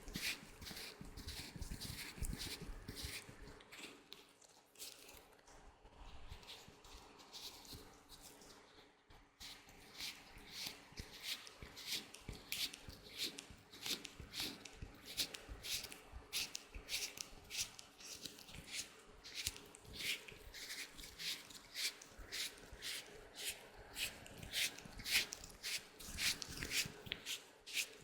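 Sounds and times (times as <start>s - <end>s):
latex gloves rubbing: 0.0s - 4.2s, 9.4s - 28.0s.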